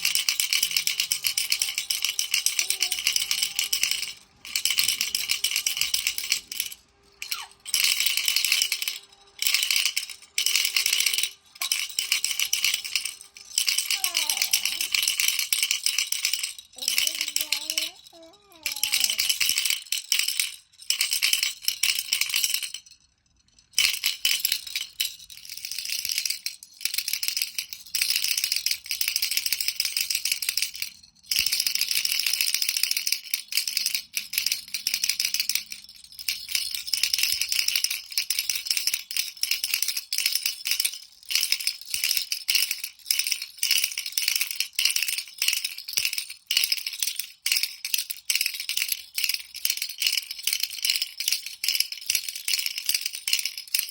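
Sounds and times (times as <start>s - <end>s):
baby rattle shaken: 0.0s - 53.9s.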